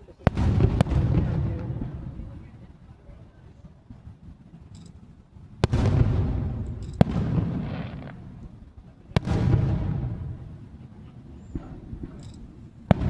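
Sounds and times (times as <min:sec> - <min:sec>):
rumbling echo: 0:00.2 - 0:02.9, 0:05.2 - 0:13.0
fireworks shells bursting: 0:04.0 - 0:13.0.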